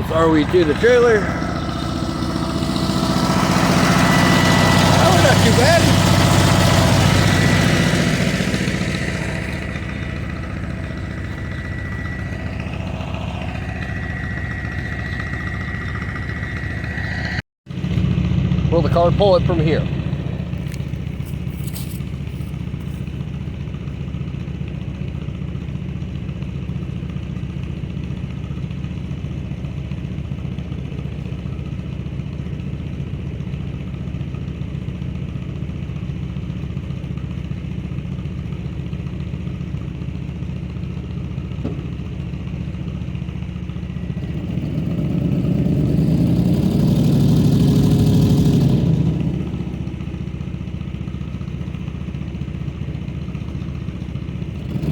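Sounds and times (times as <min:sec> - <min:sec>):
car engine idling and revving: 0:00.0 - 0:54.9.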